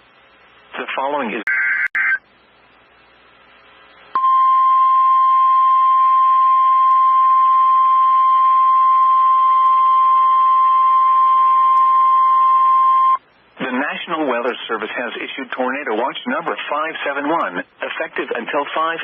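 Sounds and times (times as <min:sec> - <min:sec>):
steady warning alarm tone: 0:04.2 - 0:13.2.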